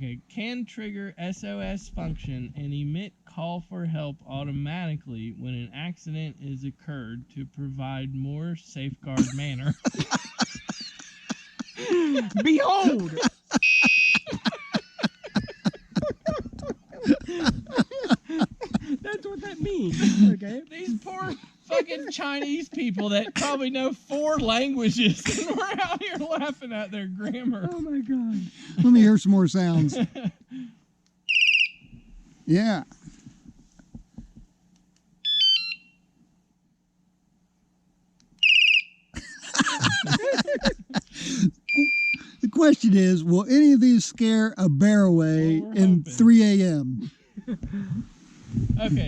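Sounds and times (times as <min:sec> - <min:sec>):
men laughing: 0:09.2 - 0:30.8, 0:39.2 - 0:43.5, 0:47.0 - 0:49.0
people's voices: 0:11.8 - 0:13.4
bicycle alarm tone: 0:13.5 - 0:14.5, 0:31.3 - 0:31.9, 0:35.2 - 0:36.0, 0:38.4 - 0:39.1, 0:41.7 - 0:42.3.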